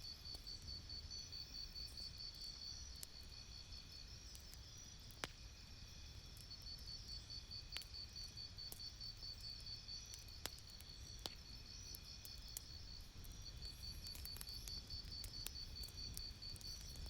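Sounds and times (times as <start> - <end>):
high pulsing cricket chirp: 0.0 - 17.0
low rumble of fire: 1.7 - 17.0
campfire crackling and popping: 4.3 - 5.4, 10.1 - 17.0.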